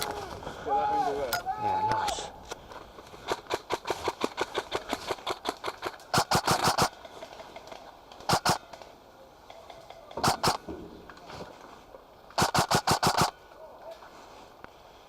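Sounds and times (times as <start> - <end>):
airsoft guns firing: 3.3 - 7.0, 8.3 - 8.6, 10.2 - 10.6, 12.4 - 13.3.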